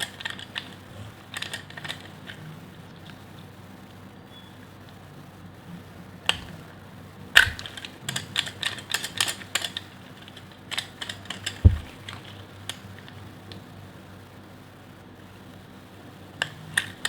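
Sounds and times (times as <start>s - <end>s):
dull knock: 11.6s - 12.0s.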